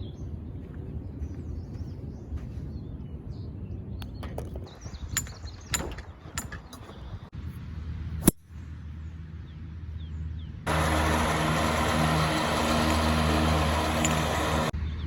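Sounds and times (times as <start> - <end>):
broad rushing noise: 10.7 - 14.8
golf cart engine hum: 10.7 - 14.8.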